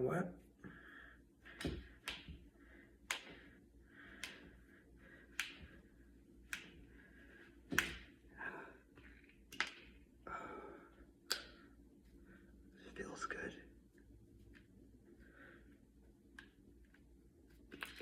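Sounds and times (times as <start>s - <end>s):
knuckles cracking: 1.4s - 4.6s, 5.3s - 5.8s, 7.7s - 8.1s, 9.0s - 10.0s, 11.2s - 11.7s, 16.3s - 18.0s.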